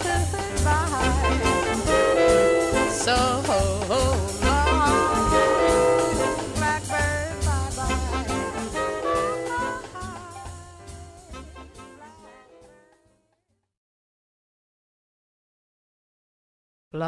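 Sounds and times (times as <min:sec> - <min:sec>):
jazz band playing: 0:00.0 - 0:13.0.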